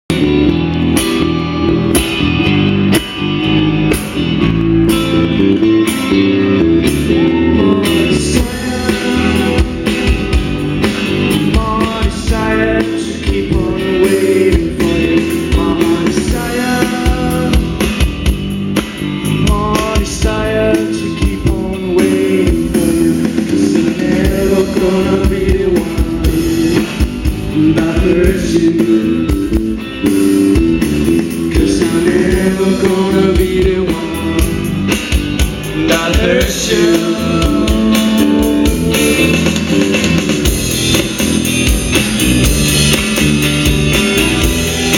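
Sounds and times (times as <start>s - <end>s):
rock guitar: 0.0s - 44.9s
person singing: 6.3s - 18.2s, 19.2s - 30.4s, 31.2s - 40.3s.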